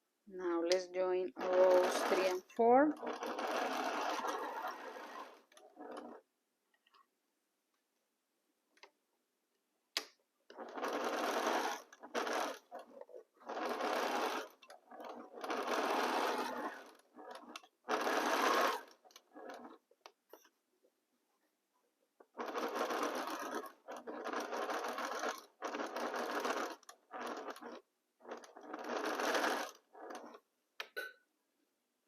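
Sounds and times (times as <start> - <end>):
sewing machine stitching: 1.1 - 6.2, 10.5 - 20.5, 22.2 - 30.5.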